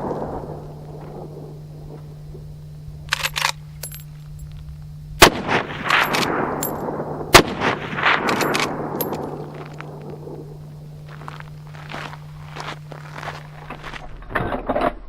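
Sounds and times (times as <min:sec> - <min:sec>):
rifle lever metallic clicks: 0:03.1 - 0:04.1
rifle shots with rolling echo: 0:05.2 - 0:10.7.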